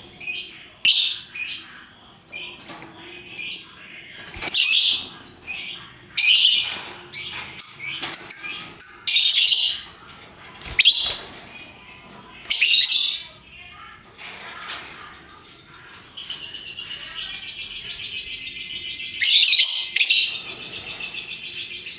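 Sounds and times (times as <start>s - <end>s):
lovebirds calling: 0.0s - 21.9s
thin bird chirps: 4.4s - 21.9s.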